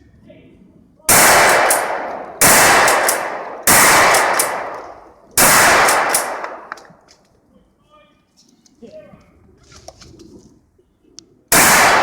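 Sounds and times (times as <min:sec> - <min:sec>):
shotgun blasts: 0:01.1 - 0:06.8, 0:11.5 - 0:12.0.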